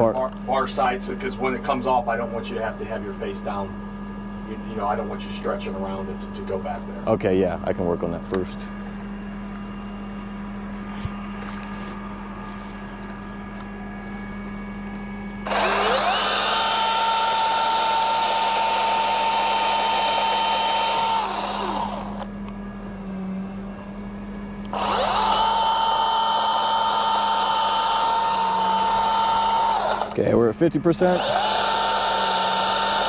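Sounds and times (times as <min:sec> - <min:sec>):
chainsaw motor whine cutting: 0:15.4 - 0:23.8, 0:24.6 - 0:33.0.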